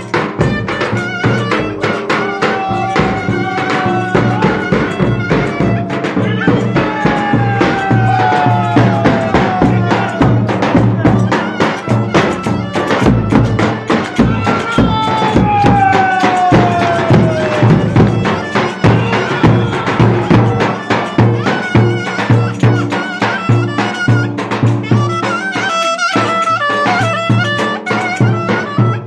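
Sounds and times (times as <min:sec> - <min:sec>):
reed wind melody: 0:00.0 - 0:29.0
steady drum beat: 0:00.0 - 0:29.0.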